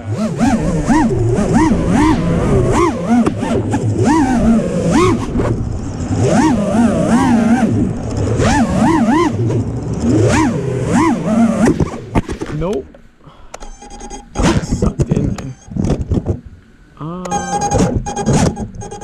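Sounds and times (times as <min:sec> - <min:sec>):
quadcopter motors whining: 0:00.0 - 0:12.2, 0:13.5 - 0:15.8.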